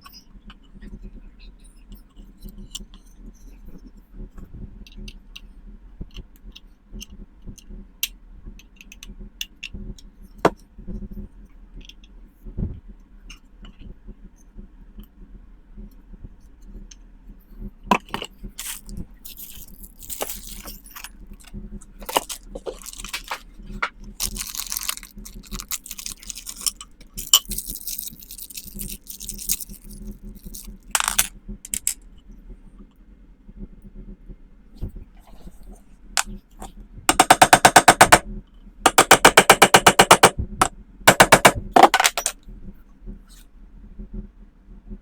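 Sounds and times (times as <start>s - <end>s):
small hard objects clicking: 17.9s - 32.0s, 37.1s - 38.2s, 41.1s - 42.3s
scraping or rustling bursts: 18.6s - 30.9s.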